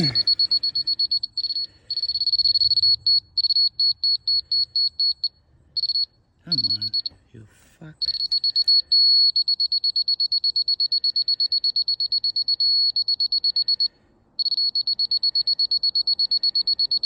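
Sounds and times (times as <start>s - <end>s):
rapid high-pitched alarm beeps: 0.0s - 7.2s, 8.0s - 17.0s.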